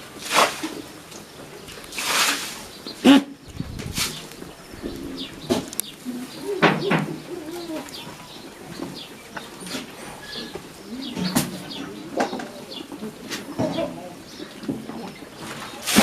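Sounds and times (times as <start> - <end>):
wavering animal call: 4.1 - 8.3.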